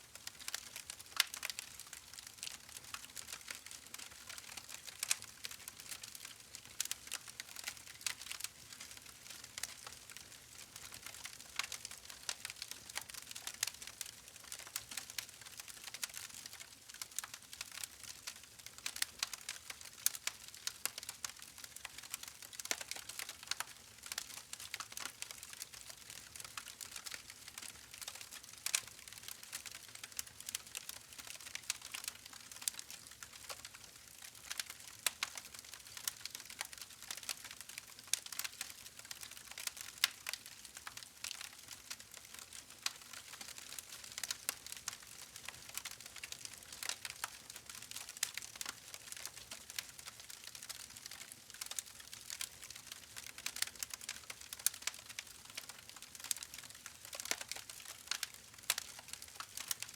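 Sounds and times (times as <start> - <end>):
campfire crackling: 34.5 - 37.7, 51.0 - 59.8.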